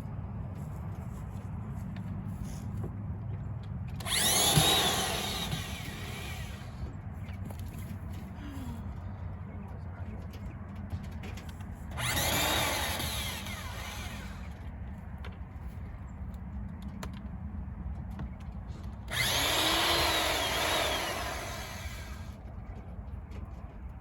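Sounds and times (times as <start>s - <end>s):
cordless drill motor whine: 4.0s - 6.9s, 12.0s - 14.6s, 19.1s - 22.4s.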